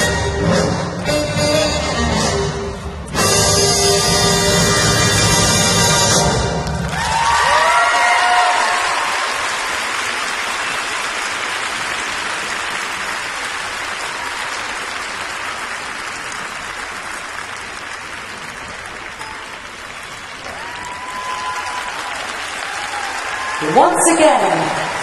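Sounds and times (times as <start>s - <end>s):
crowd applauding: 6.6s - 25.0s.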